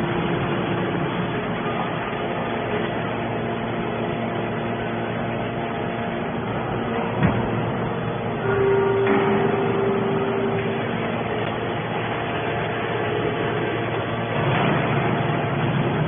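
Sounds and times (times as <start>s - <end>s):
hydraulic baler humming: 0.0s - 16.0s
loud steady whine: 0.0s - 16.0s.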